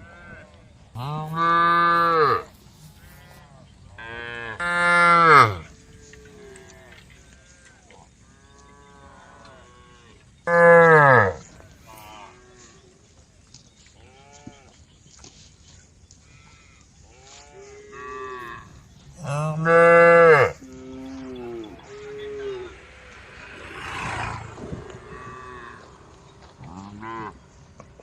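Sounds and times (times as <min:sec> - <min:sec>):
cows mooing: 0:01.0 - 0:03.4, 0:04.0 - 0:07.3, 0:08.4 - 0:12.8, 0:16.4 - 0:27.5.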